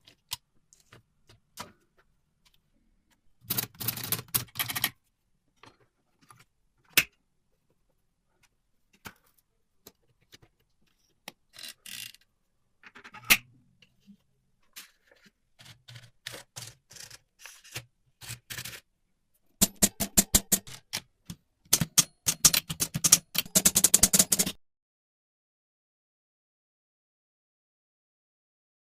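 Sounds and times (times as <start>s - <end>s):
typewriter keys clacking: 21.7s - 24.6s.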